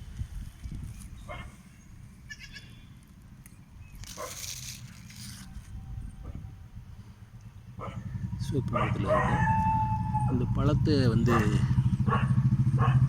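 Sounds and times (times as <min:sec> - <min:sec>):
low rumble: 0:05.3 - 0:12.9
animal calls: 0:07.8 - 0:13.0.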